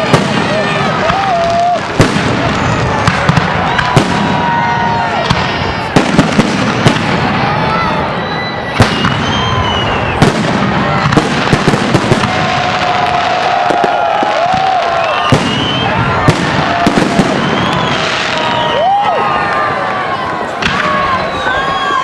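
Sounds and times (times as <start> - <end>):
fireworks bangs: 0.0 - 22.0
fireworks pops: 8.7 - 19.1, 20.6 - 21.9.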